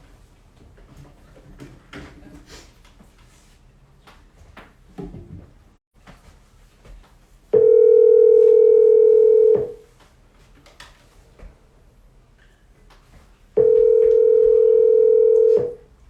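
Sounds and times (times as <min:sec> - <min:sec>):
telephone beep: 0:07.6 - 0:09.8, 0:13.6 - 0:15.8.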